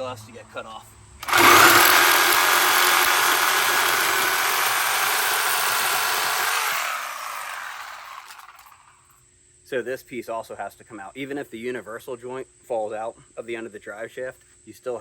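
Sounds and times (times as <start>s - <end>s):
angle grinder cutting metal: 1.2s - 8.8s.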